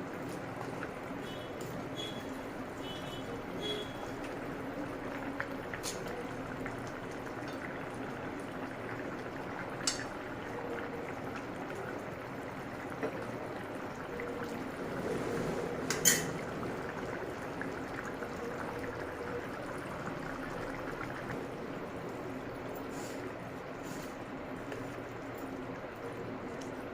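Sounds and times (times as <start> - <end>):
curry bubbling in a pot: 0.0 - 26.9.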